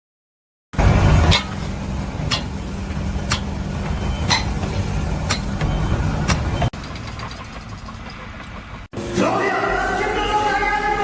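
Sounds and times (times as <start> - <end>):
engine running: 0.8 - 9.4.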